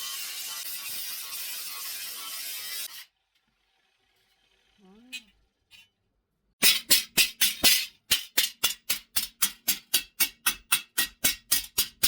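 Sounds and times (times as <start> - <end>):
hammer striking blade on anvil: 6.6 - 12.0.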